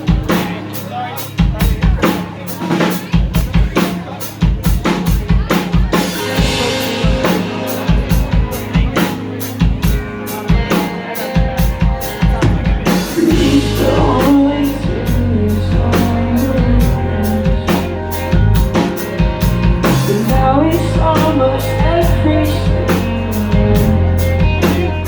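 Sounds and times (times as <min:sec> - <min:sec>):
drum kit beat: 0:00.0 - 0:25.0
live rock band playing: 0:00.0 - 0:25.0
sustained bass: 0:06.2 - 0:25.0.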